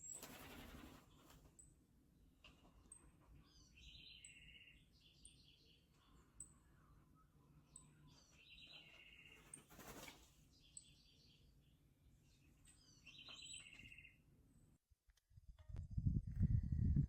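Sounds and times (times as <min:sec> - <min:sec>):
bird chirps and trills: 0:02.9 - 0:14.2.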